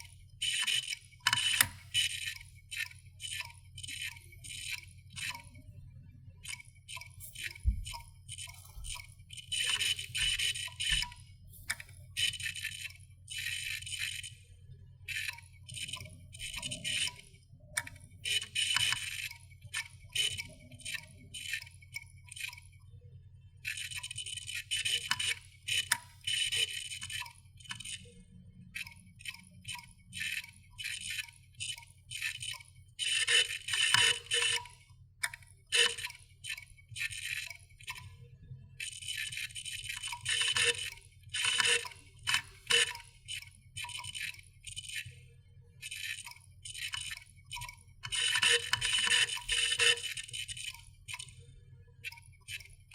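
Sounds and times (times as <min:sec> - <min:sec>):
hard drive clicking: 0:00.0 - 0:05.6, 0:06.4 - 0:14.4, 0:28.8 - 0:38.1, 0:38.8 - 0:45.2, 0:45.8 - 0:51.4.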